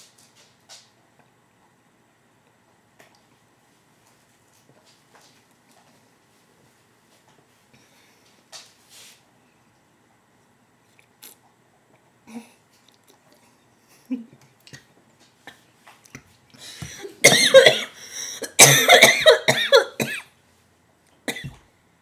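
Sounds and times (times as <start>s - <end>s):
person coughing: 16.8s - 20.3s, 21.3s - 21.6s.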